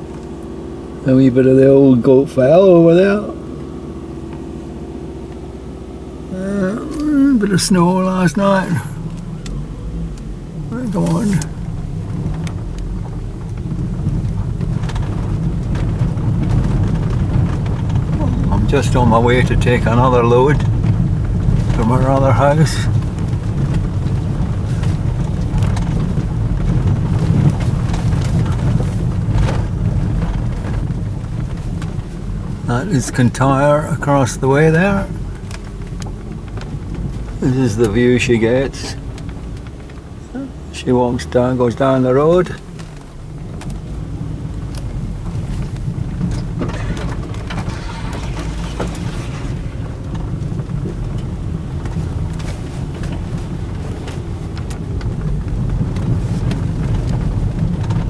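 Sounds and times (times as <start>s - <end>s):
car engine and road noise: 0.0s - 58.0s.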